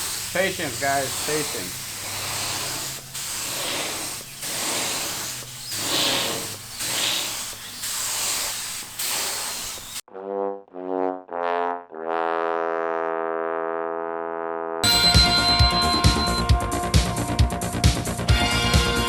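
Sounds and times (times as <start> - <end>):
paint spray gun hissing: 0.0 - 10.0
brass-like jingle: 14.8 - 17.0.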